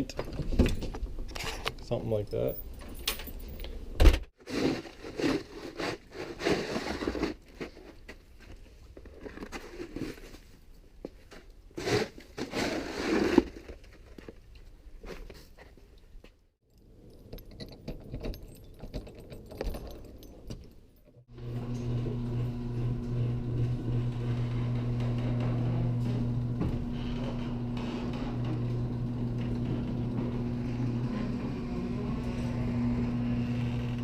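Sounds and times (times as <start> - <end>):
handling jangling and scraping: 0.2 - 7.0, 16.7 - 21.3
low hum: 21.4 - 34.0.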